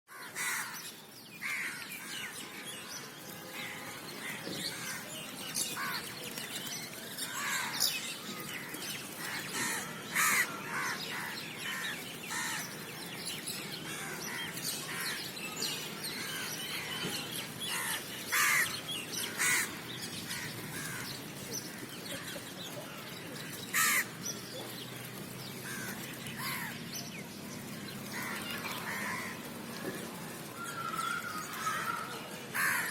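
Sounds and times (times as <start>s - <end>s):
crows cawing: 0.1s - 0.8s, 9.2s - 12.7s, 17.7s - 18.7s, 19.3s - 21.0s, 23.7s - 24.2s, 25.6s - 26.8s, 28.1s - 29.4s, 30.9s - 32.9s.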